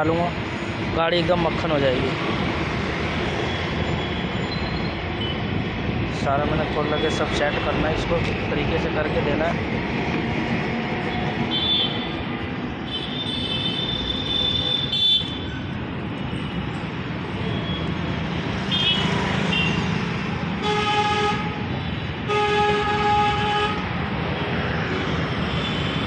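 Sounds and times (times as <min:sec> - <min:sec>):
street traffic: 0:00.0 - 0:26.0
vehicle horn honking: 0:11.5 - 0:12.1, 0:18.7 - 0:19.8.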